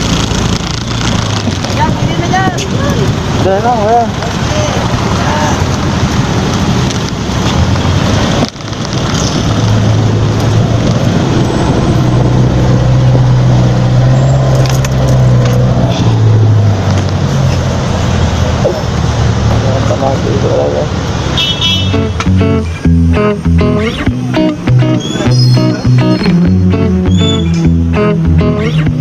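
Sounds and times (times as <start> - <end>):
traffic noise: 0.0 - 29.0
low engine drone: 22.0 - 29.0.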